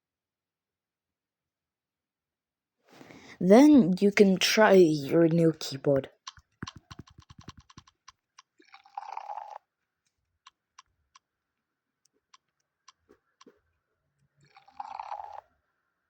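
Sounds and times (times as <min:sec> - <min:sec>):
phone keyboard clicks: 0:06.2 - 0:08.2.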